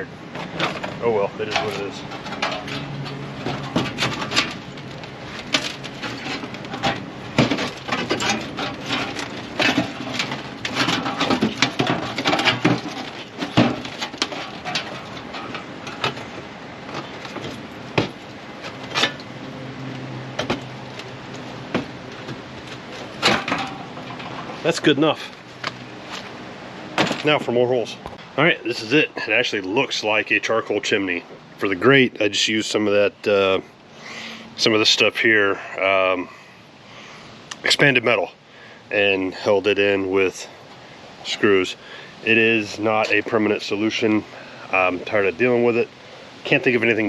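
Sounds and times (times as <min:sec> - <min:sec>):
sheet steel clanking: 0:00.3 - 0:26.2.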